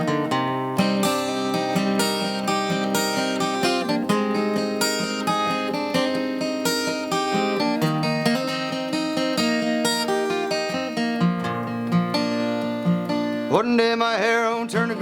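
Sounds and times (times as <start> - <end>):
acoustic guitar strumming: 0.0 - 15.0
person singing: 13.4 - 15.0.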